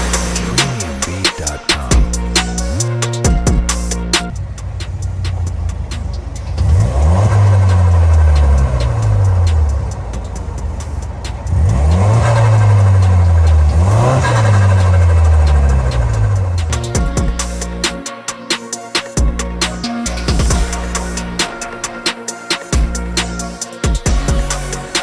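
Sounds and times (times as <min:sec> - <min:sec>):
car engine revving: 0:00.0 - 0:18.0.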